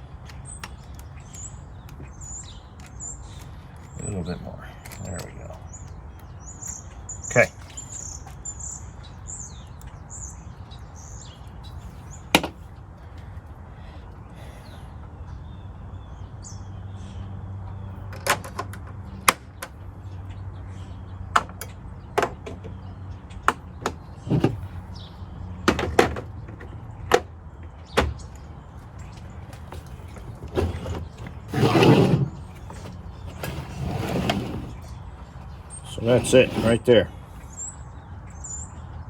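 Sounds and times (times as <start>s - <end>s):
battery scraping out of case: 29.7s - 34.9s.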